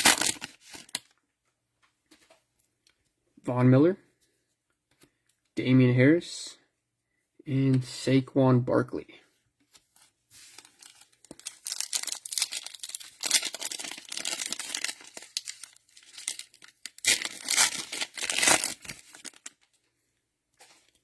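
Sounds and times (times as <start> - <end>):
cellophane wrapper tearing and crinkling: 0.0 - 1.1, 10.4 - 19.7.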